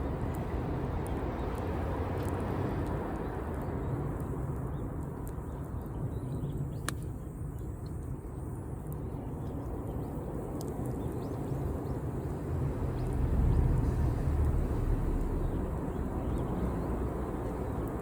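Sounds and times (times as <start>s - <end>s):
campfire rumbling: 0.0s - 18.0s
fire popping: 6.6s - 18.0s.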